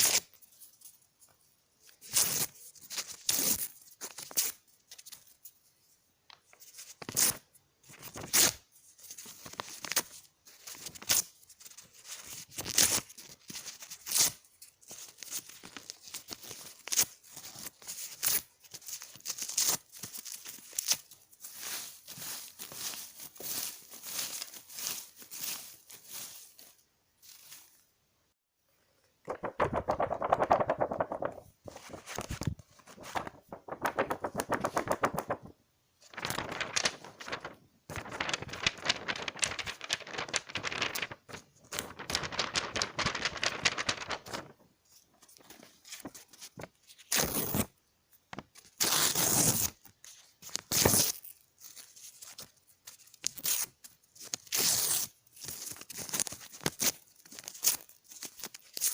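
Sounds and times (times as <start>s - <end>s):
paper tearing: 48.8s - 49.8s.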